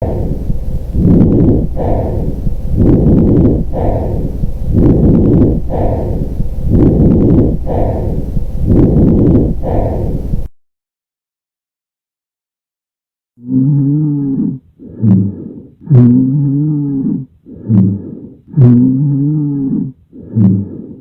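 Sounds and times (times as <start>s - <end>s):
breath sounds through stethoscope: 0.0s - 10.5s, 13.4s - 21.0s
faint lung clicks: 0.0s - 10.5s.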